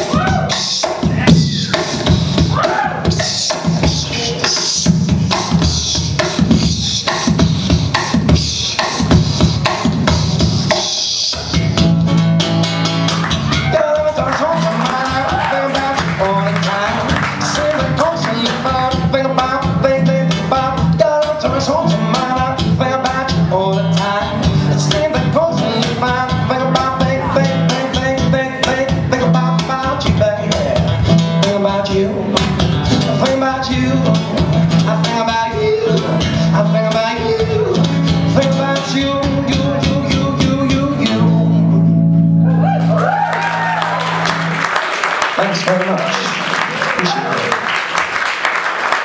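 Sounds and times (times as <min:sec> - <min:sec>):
live guitar music: 0:00.0 - 0:46.8
audience cheering: 0:02.5 - 0:03.1, 0:13.1 - 0:18.6, 0:42.4 - 0:49.0.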